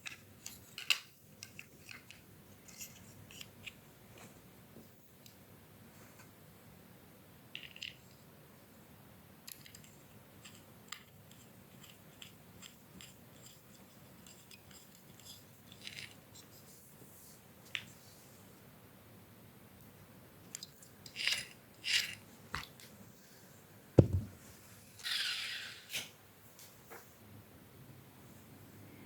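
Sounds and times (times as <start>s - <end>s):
small parts clicking: 0.0s - 3.8s, 9.4s - 16.4s
small parts scraping: 9.5s - 16.6s, 20.5s - 22.7s, 24.9s - 26.1s.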